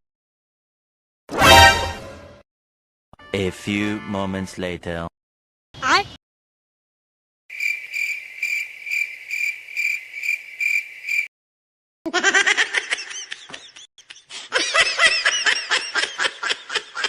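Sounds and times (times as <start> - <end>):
cricket chirping: 7.5 - 11.3
high-pitched laugh: 12.1 - 17.0.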